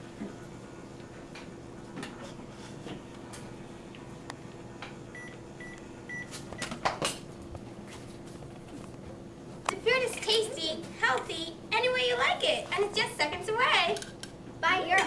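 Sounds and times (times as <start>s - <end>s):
microwave oven beeping: 5.0s - 6.8s.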